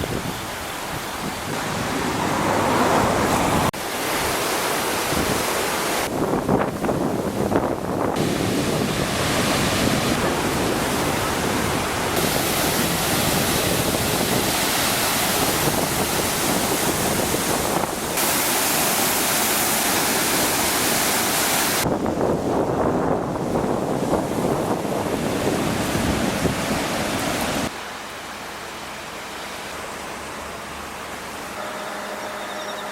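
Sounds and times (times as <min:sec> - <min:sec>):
river rushing: 0:00.0 - 0:32.9
wind buffeting microphone: 0:06.1 - 0:18.2, 0:21.8 - 0:27.7.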